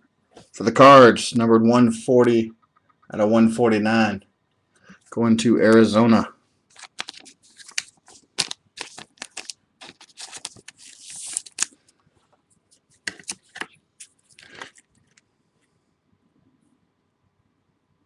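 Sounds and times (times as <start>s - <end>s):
plastic crinkling and rustling: 6.7s - 15.2s.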